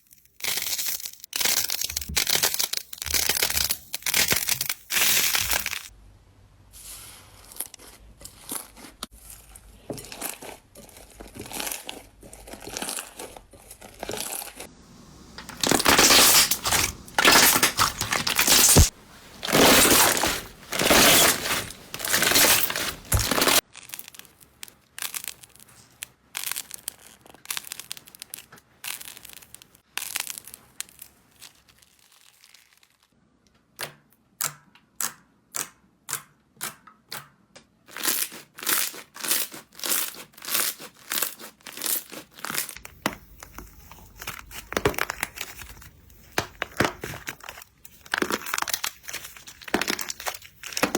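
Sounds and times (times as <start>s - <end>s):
slime squishing: 6.8s - 32.2s, 37.9s - 50.9s.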